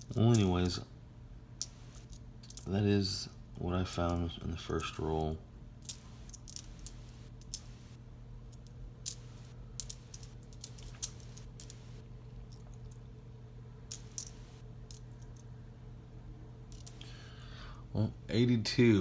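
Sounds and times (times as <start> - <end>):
faint steady hum: 0.0 - 19.0
coins clinking: 5.8 - 8.0, 9.0 - 12.0, 13.9 - 14.6.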